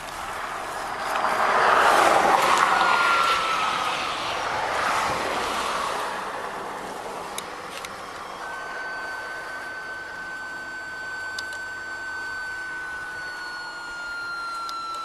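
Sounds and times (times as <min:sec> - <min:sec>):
vehicle passing by: 0:00.0 - 0:07.4.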